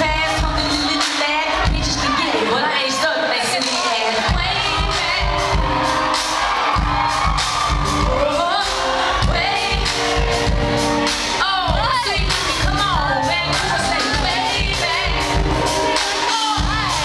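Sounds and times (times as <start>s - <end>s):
live band drum beat: 0.0s - 2.5s, 3.6s - 17.0s
faint crowd: 0.0s - 17.0s.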